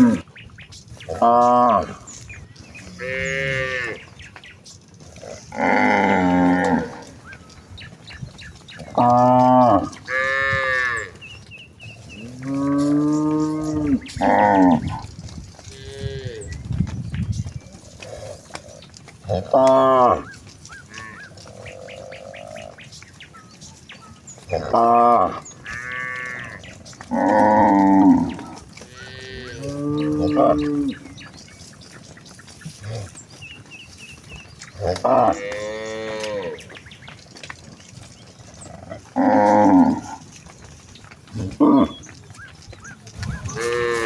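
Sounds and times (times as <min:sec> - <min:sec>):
cattle mooing: 0:00.0 - 0:00.2, 0:01.1 - 0:02.2, 0:02.8 - 0:04.2, 0:05.0 - 0:07.6, 0:08.7 - 0:11.2, 0:12.1 - 0:16.6, 0:19.2 - 0:22.8, 0:24.4 - 0:31.4, 0:34.6 - 0:36.8, 0:38.5 - 0:40.6, 0:41.4 - 0:42.4, 0:43.1 - 0:44.0.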